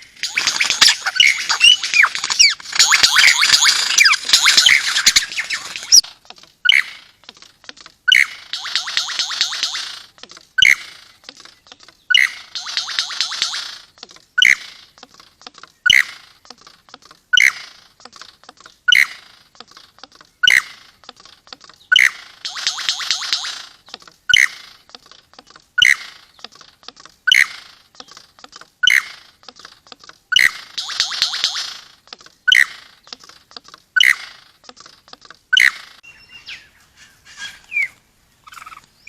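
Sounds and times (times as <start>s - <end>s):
bird rapid chattering: 0.0s - 39.0s
bird high call: 0.2s - 6.0s, 8.1s - 11.2s, 21.8s - 24.6s, 35.6s - 39.0s.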